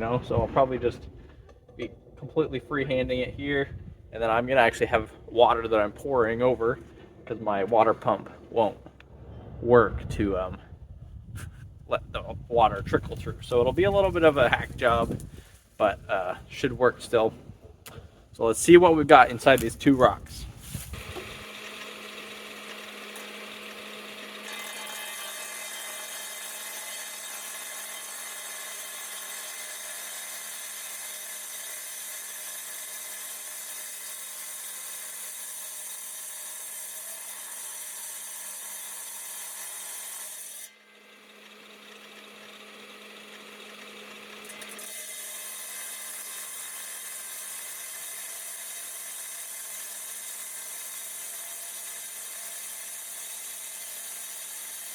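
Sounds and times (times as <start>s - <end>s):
motor hum: 20.6s - 25.0s
saw blade grinding stone: 20.6s - 42.4s, 43.0s - 54.9s.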